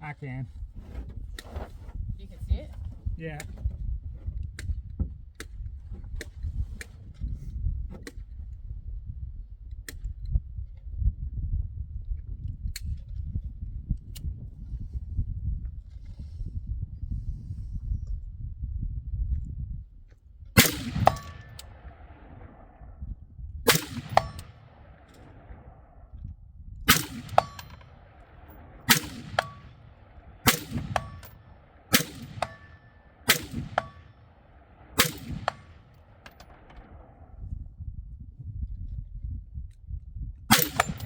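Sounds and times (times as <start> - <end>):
bullet clanging on steel target: 20.6 - 21.8, 23.7 - 24.7, 26.9 - 34.2, 34.9 - 36.8, 40.5 - 41.0
gunshots: 20.6 - 22.7, 23.7 - 25.8, 26.9 - 37.3, 40.5 - 41.0.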